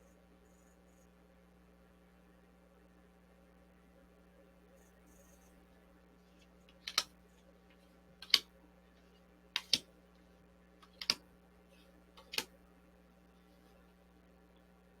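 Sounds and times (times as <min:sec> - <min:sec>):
faint steady hum: 0:00.0 - 0:15.0
sharp double clicks: 0:06.8 - 0:07.1, 0:08.2 - 0:08.5, 0:09.6 - 0:09.9, 0:10.8 - 0:11.2.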